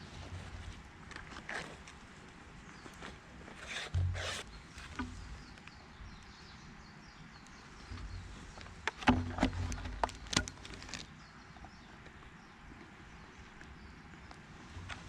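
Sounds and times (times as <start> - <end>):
faint outdoor background: 0.0 - 15.0
dull thud: 3.7 - 5.4.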